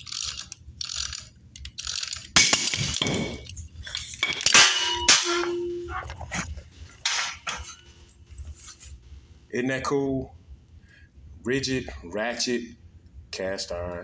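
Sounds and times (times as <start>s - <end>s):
pipe cutter cracks and clanks: 2.1s - 6.2s, 7.0s - 7.8s
metallic ring: 2.4s - 6.1s, 7.0s - 7.9s.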